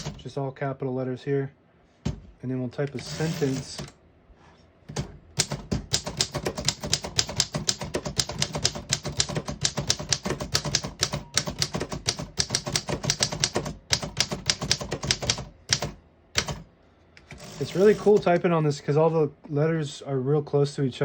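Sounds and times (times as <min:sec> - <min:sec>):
typewriter key strikes: 0:05.4 - 0:16.6.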